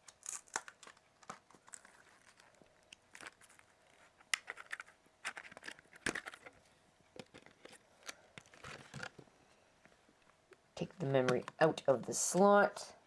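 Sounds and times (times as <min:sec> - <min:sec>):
plastic packaging crinkling: 0:00.0 - 0:06.6.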